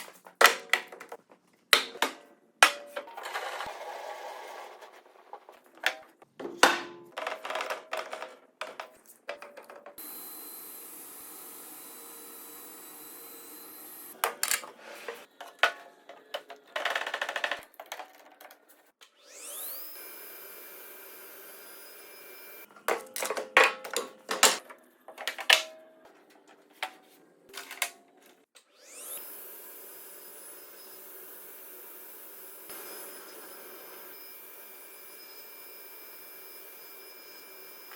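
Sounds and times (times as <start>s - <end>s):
wood pieces knocking and clattering: 0.0s - 3.4s, 22.8s - 25.8s
workpieces knocking and clattering: 0.0s - 3.8s, 5.2s - 10.0s, 14.2s - 18.9s, 22.7s - 28.1s
machine motor whining: 19.2s - 22.7s, 28.7s - 37.9s.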